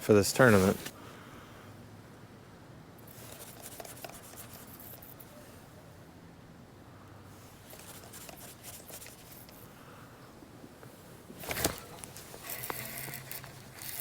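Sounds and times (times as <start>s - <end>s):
fishing gear clicks and rustling: 11.3s - 14.0s.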